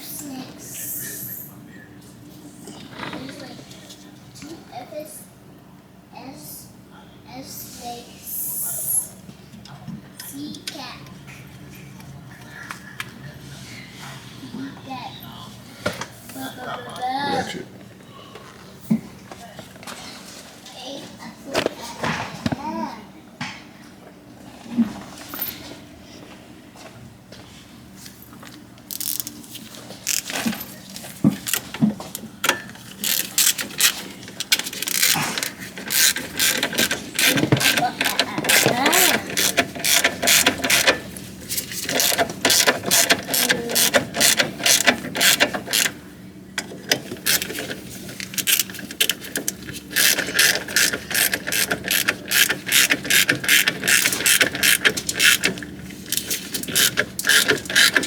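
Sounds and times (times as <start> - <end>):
ratchet wrench clicking: 28.9 - 29.3, 30.0 - 30.4, 32.9 - 41.0, 41.8 - 46.0, 46.6 - 58.0.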